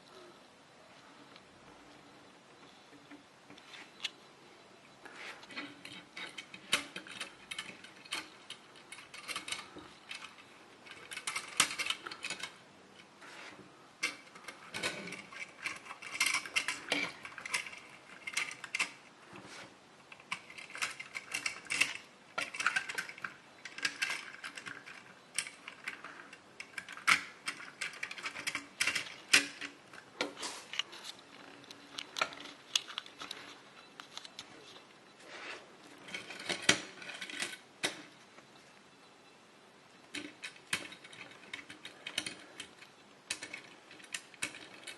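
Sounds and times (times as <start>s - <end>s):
toy cars clicking and rattling: 5.5s - 13.1s, 14.0s - 19.1s, 20.1s - 29.8s, 36.0s - 38.1s, 40.1s - 44.9s.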